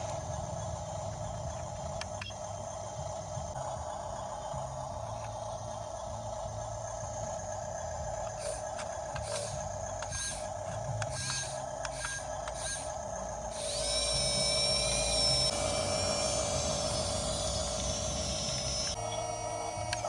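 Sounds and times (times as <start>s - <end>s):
toy motor whining: 6.0s - 20.0s
mechanical clicking and scraping: 8.2s - 14.2s.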